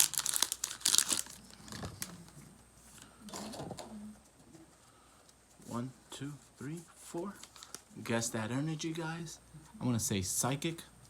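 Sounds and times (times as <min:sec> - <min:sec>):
foil wrapper crinkling and tearing: 0:00.0 - 0:02.1, 0:07.4 - 0:07.8.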